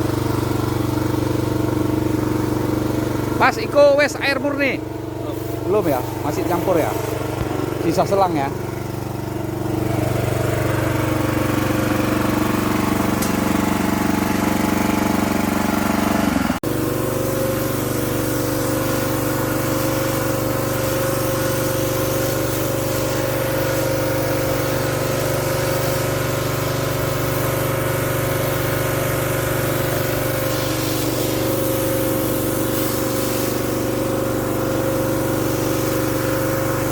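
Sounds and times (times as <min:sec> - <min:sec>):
pressure washer engine running: 0:00.0 - 0:36.9.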